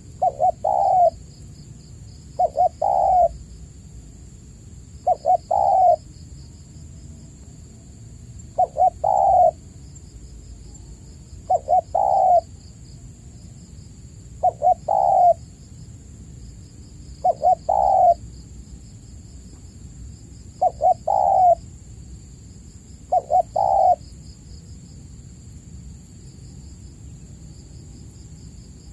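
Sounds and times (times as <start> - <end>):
dove cooing: 0.0 - 1.2, 2.4 - 3.4, 5.0 - 6.1, 8.5 - 9.6, 11.4 - 12.6, 14.4 - 15.4, 17.2 - 18.2, 20.6 - 21.6, 23.1 - 24.0
insect-like drone with chirps: 0.0 - 28.9.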